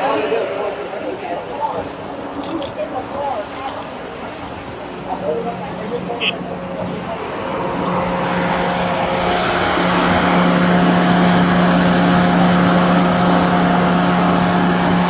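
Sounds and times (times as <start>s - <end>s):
steady low hum: 4.3s - 15.0s
motor vehicle running: 4.4s - 15.0s.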